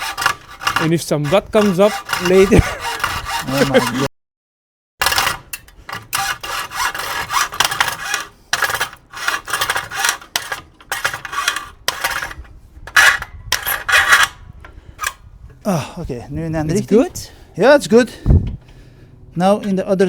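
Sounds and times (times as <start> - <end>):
hand saw cutting: 0.0 - 4.1, 5.0 - 14.4.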